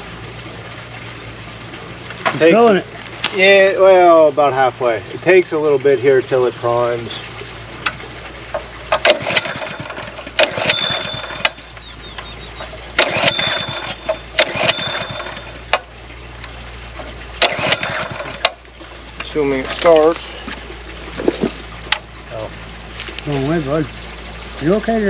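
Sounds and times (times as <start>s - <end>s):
small engine running: 0.0s - 25.0s
sharp metallic knocks: 7.8s - 16.0s, 17.0s - 20.0s.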